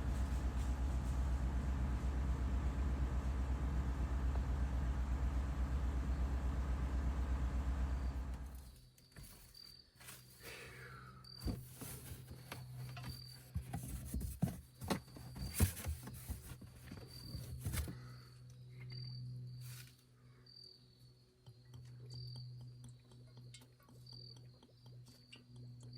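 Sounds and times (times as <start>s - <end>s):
low hum: 0.0s - 8.7s
cricket chirping: 8.0s - 11.6s, 18.1s - 25.9s.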